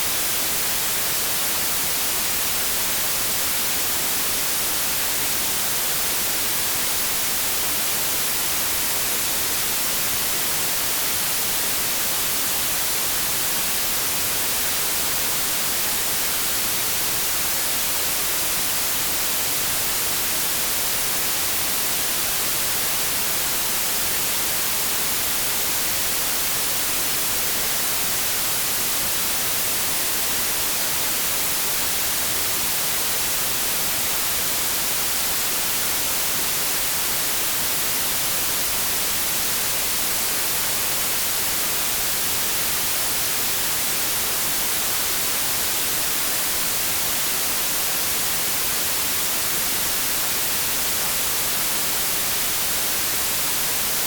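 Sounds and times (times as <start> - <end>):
white noise hiss: 0.0 - 54.0.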